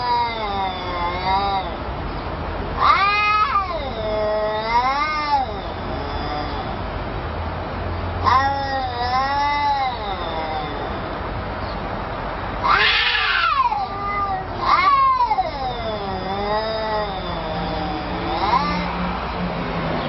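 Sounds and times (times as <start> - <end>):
cat yowling: 0.0 - 1.9, 2.7 - 7.0, 8.2 - 11.4, 12.6 - 19.2.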